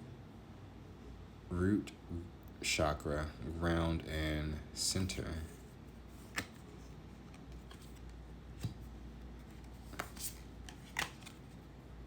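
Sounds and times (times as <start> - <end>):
low steady hum: 0.0 - 12.0
cards snapping and sliding: 6.2 - 6.6, 9.6 - 11.5.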